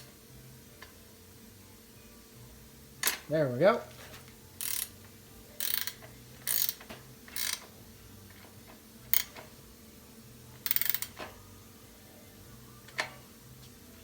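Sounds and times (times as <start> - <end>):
ratchet wrench clicking: 4.6 - 5.0, 5.6 - 7.7, 9.1 - 9.5, 10.6 - 11.3.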